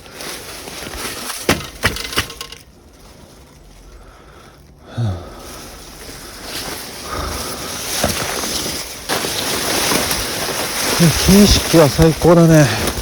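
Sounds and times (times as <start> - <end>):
dry wood cracking and snapping: 0.0 - 2.7, 7.1 - 13.0.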